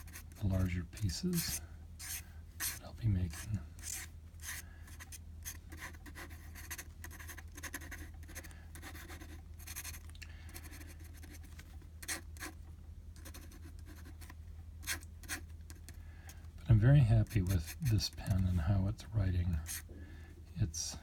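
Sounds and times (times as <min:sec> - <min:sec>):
dip pen scratching paper: 0:00.0 - 0:10.0, 0:10.6 - 0:12.6, 0:13.2 - 0:15.9, 0:17.2 - 0:18.5, 0:19.6 - 0:19.8
steady low hum: 0:00.0 - 0:21.0.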